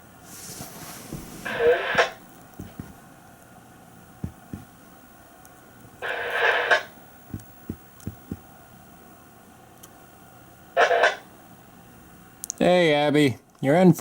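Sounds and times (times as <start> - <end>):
scanner radio burst: 1.4 - 2.2, 6.0 - 6.9, 10.8 - 11.2
soft low thumps: 4.2 - 4.9, 7.3 - 8.5.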